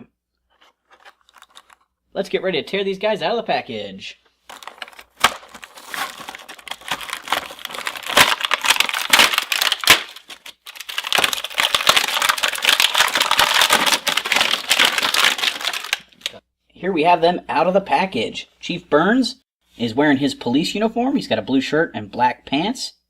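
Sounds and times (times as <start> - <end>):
package being torn open: 4.5 - 16.4.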